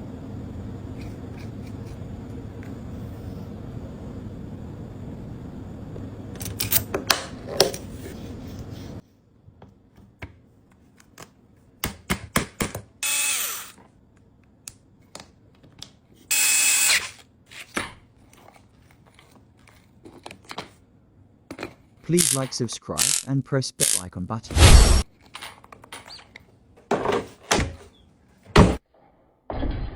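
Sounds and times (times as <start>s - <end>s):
small power drill running: 13.0s - 13.8s, 16.3s - 17.2s
clicks of small parts handled: 22.2s - 24.0s.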